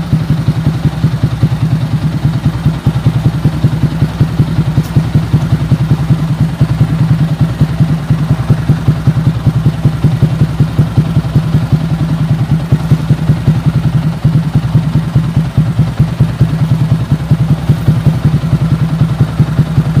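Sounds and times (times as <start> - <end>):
motorcycle engine idling: 0.0 - 20.0.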